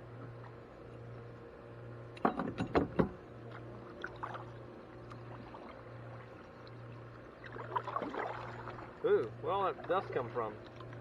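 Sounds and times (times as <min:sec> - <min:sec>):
low steady hum: 0:00.0 - 0:11.0
soft water sounds: 0:00.0 - 0:11.0.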